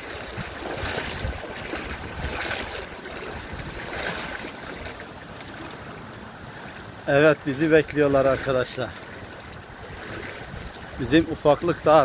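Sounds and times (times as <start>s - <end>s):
wind buffeting microphone: 0.0s - 5.1s, 9.4s - 12.0s.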